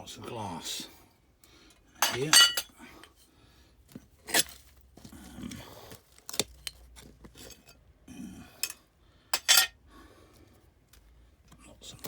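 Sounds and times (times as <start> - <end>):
broken glass clinking and scraping: 2.0 - 2.7, 9.4 - 9.8.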